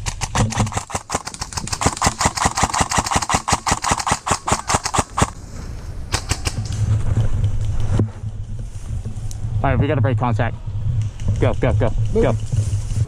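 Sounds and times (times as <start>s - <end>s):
airsoft rifle firing bursts: 0.0s - 5.4s.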